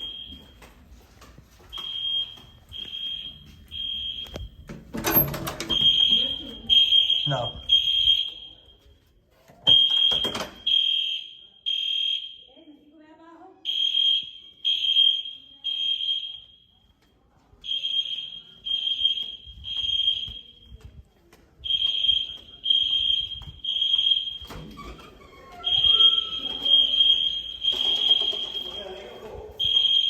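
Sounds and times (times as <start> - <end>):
fire alarm horn blasts: 1.7 - 4.6, 5.7 - 8.8, 9.7 - 12.5, 13.6 - 16.7, 17.6 - 20.6, 21.6 - 24.7, 25.6 - 30.0.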